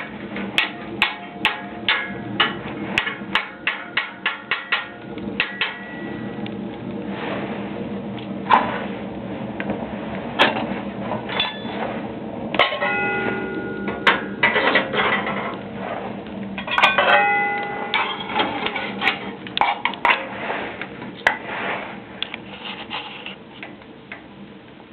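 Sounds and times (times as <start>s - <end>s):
wood fire crackling and popping: 0.0s - 12.7s, 13.8s - 16.8s, 17.5s - 24.9s
ringing metal clanks: 3.6s - 6.4s, 11.3s - 11.8s, 12.6s - 15.4s, 16.6s - 19.0s.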